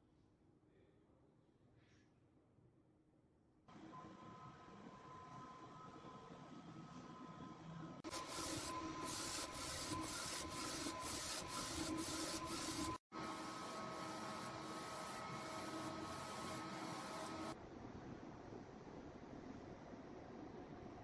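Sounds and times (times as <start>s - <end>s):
faint printer hum: 3.7s - 17.6s.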